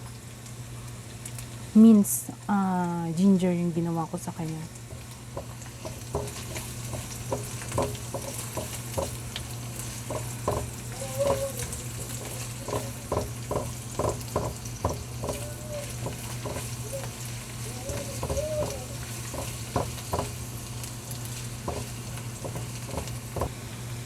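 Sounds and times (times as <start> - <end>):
food sizzling in hot oil: 3.9 - 23.7
utensil scraping and knocking pan: 4.9 - 20.4, 21.6 - 23.5.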